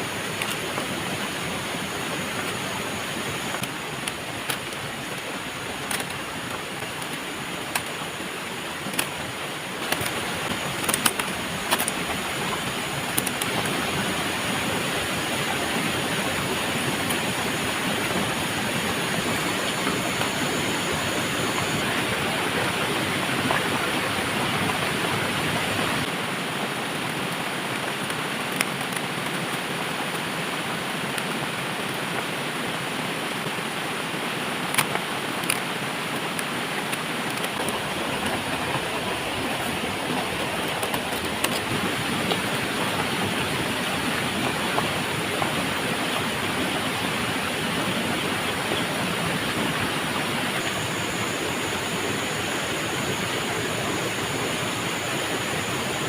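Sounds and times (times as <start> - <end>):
steady rushing noise: 0.0 - 26.5, 33.4 - 56.0
sharp clicks: 9.8 - 13.8.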